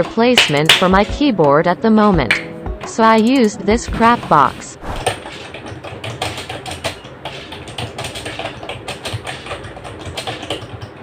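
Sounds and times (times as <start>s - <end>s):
typing on computer keyboard: 5.2s - 11.0s.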